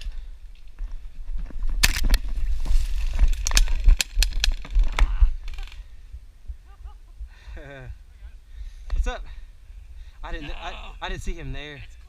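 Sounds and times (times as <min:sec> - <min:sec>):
sharp irregular clicks and knocks: 0:03.3 - 0:05.8.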